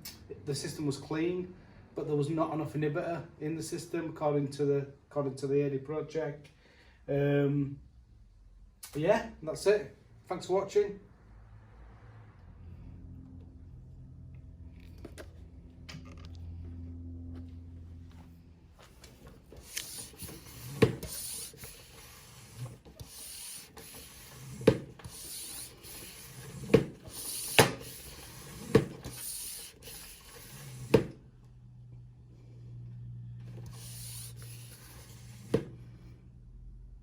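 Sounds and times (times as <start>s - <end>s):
rubbing and handling noises: 18.0s - 31.1s, 33.6s - 35.8s.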